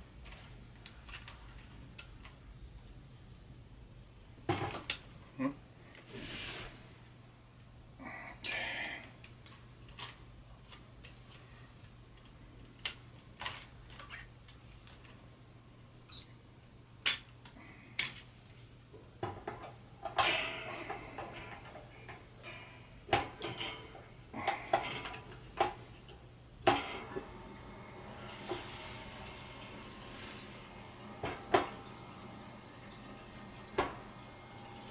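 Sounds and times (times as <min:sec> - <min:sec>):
plastic parts clicking and rattling: 0:00.2 - 0:02.4, 0:09.2 - 0:15.2.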